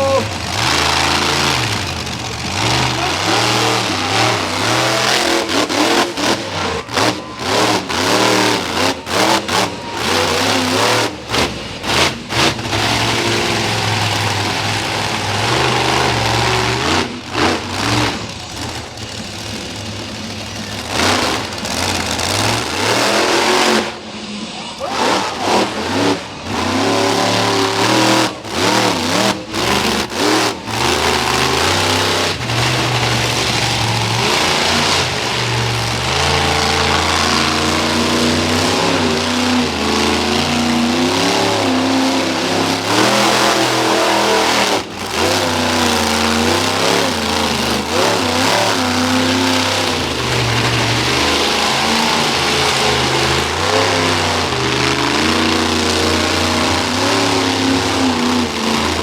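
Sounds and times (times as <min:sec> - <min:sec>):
truck engine revving hard: 0:00.0 - 0:59.0.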